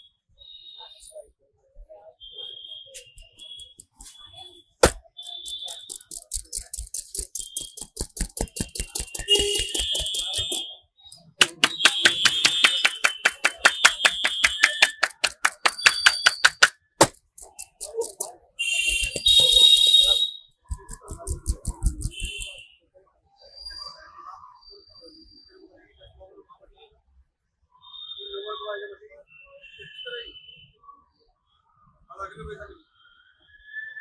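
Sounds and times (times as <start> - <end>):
high whistling tone: 11.2 - 16.7
hands slapping in massage: 11.2 - 18.3.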